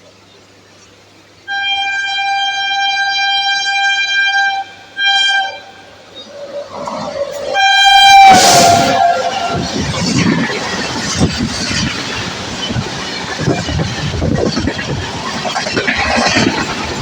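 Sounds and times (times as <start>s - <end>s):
train horn blasts: 1.5s - 6.2s, 7.4s - 10.0s
train rushing past: 1.5s - 17.0s.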